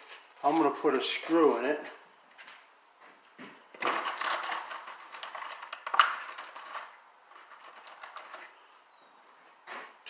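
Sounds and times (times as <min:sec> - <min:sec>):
screws clicking and rattling: 0:03.8 - 0:08.4.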